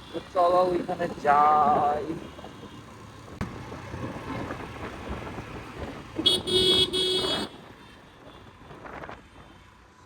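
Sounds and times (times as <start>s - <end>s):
road traffic noise: 0.0s - 10.0s
vehicle horn: 6.2s - 7.7s.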